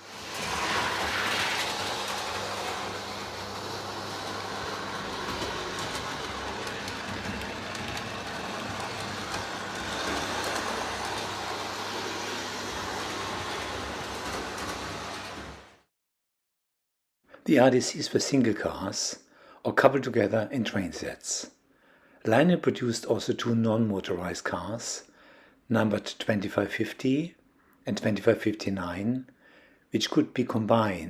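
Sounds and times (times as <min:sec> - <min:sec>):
model train motor hum: 0:00.0 - 0:15.8
wheels clicking over rail joints: 0:00.0 - 0:15.8.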